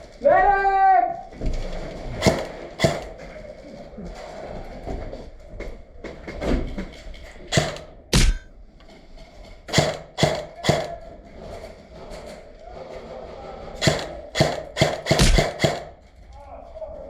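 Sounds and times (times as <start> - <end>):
sharp knocks and thuds: 7.5 - 8.6, 13.8 - 16.0.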